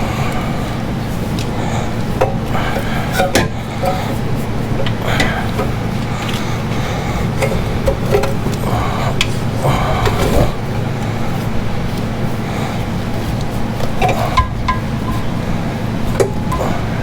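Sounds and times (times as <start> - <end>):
steady low hum: 0.0 - 17.0
metal exhaust pipe knocks and clanks: 14.0 - 15.4.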